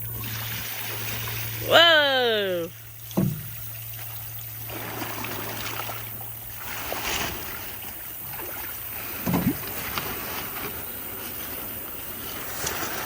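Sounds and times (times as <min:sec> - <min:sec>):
thump: 0:03.2 - 0:03.5.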